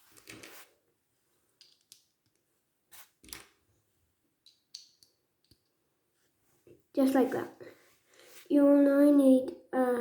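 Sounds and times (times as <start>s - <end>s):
plastic bricks clicking: 1.6s - 2.4s, 4.4s - 5.7s.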